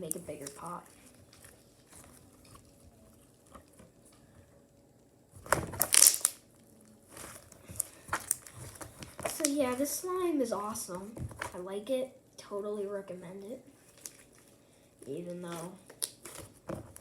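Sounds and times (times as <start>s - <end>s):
slime popping: 5.4s - 6.4s.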